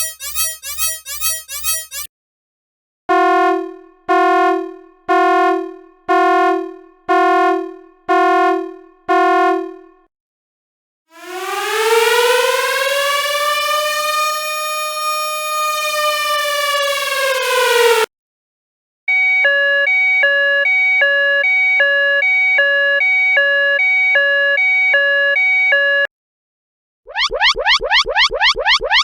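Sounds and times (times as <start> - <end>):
single-pitched alarm tone strikes: 0.0 - 2.1
siren winding up and falling: 0.0 - 2.1, 11.2 - 18.1, 27.1 - 29.0.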